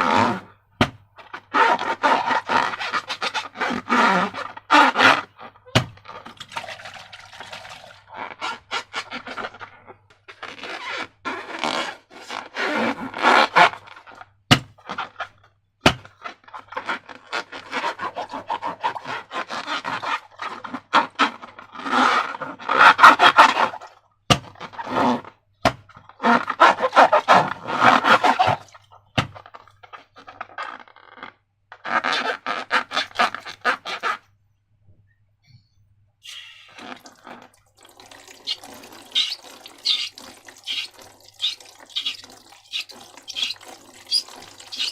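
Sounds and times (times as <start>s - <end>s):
sticky slime squishing: 36.8s - 44.9s.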